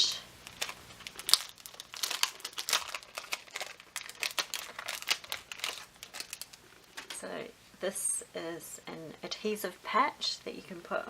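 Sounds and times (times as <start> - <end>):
packaging crinkling: 0.0 - 7.2.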